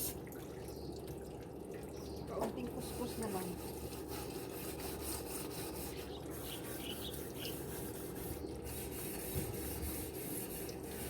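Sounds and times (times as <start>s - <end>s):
scrubbing a barbecue grill: 2.9s - 11.0s.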